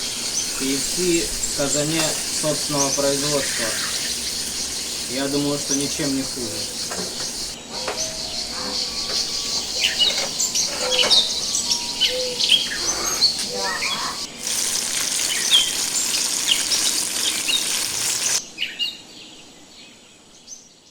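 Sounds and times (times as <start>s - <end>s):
chicken sizzling in hot oil: 0.0s - 7.6s, 12.6s - 18.4s
birds chirping: 0.0s - 20.9s.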